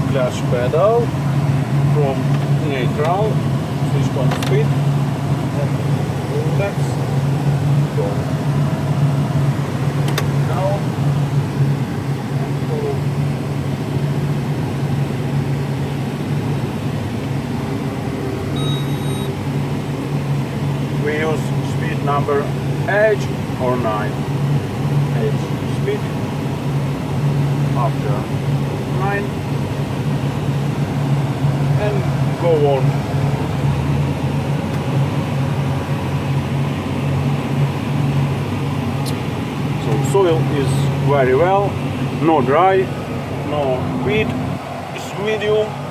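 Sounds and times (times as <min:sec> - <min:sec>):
tractor diesel engine droning: 0:00.0 - 0:45.9
short high beep: 0:18.6 - 0:19.4.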